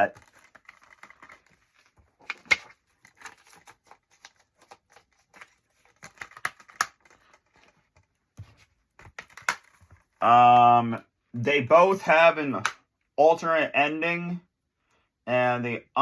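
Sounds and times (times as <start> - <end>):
plastic cases clicking: 0.1 - 7.7, 9.0 - 10.0.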